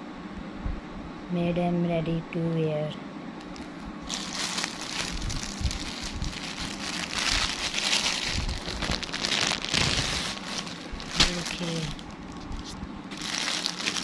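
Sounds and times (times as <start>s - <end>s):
packaging rustling and crinkling: 3.4s - 14.0s.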